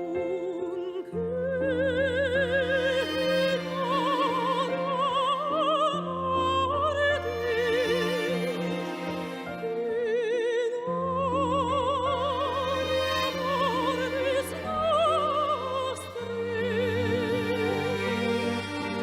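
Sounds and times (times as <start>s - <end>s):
operatic singing: 0.0s - 19.0s
orchestral accompaniment: 2.4s - 10.1s, 11.6s - 19.0s.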